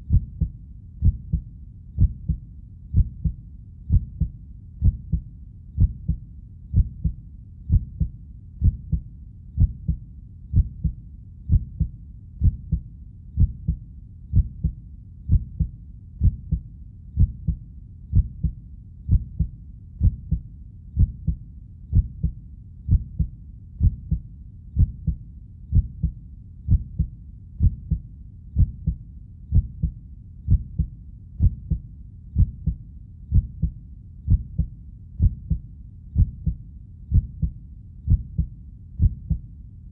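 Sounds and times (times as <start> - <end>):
heartbeat thumps: 0.0 - 35.6, 36.2 - 39.5.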